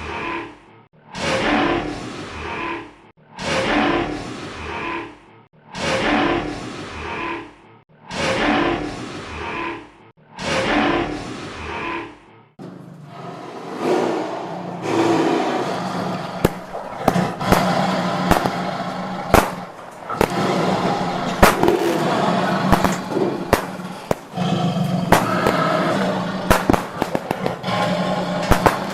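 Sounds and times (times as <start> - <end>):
fireworks bangs and cracks: 16.3 - 28.9.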